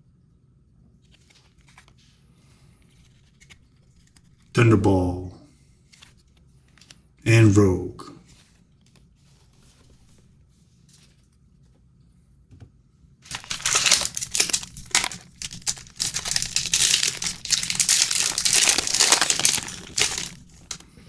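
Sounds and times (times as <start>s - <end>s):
wrapper crinkling in hands: 13.3s - 21.0s.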